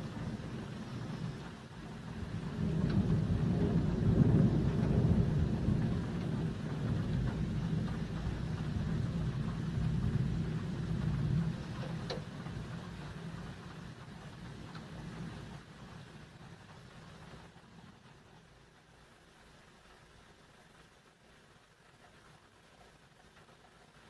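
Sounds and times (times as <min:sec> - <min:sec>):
thunder rumbling: 0:00.0 - 0:16.2.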